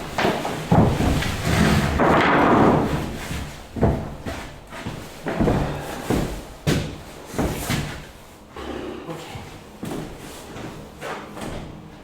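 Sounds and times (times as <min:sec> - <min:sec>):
wood scraping: 0:00.2 - 0:03.2.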